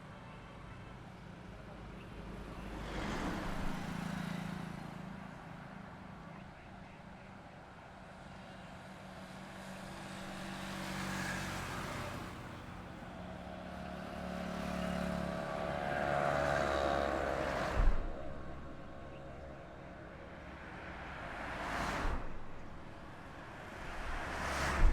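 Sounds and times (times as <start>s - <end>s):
highway vehicles passing: 0.9s - 24.9s
sharp thump: 16.2s - 24.9s.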